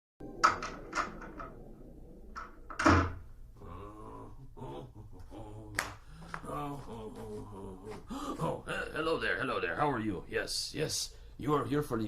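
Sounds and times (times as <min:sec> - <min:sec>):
door clicks and knocks: 0:00.4 - 0:01.6, 0:02.4 - 0:03.2
door thud: 0:02.4 - 0:03.3.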